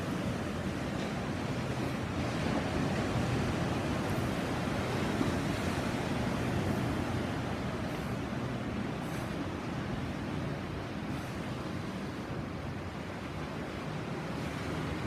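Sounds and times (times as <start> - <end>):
sea surf washing onto shore: 0.0 - 15.0.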